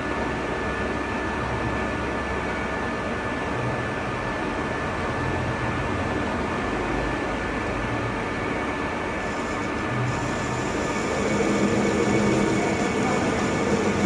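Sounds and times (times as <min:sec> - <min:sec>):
metal lathe running: 0:05.1 - 0:14.0.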